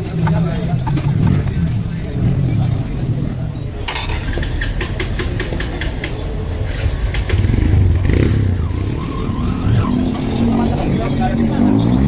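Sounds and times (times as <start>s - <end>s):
motorcycle engine rumbling: 0.0s - 12.0s.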